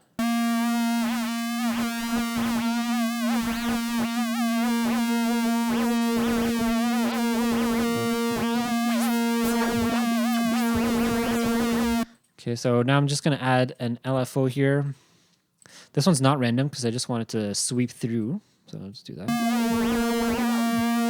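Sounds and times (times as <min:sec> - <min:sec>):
sustained warbling synthesizer note: 0:00.0 - 0:12.0, 0:19.3 - 0:21.0.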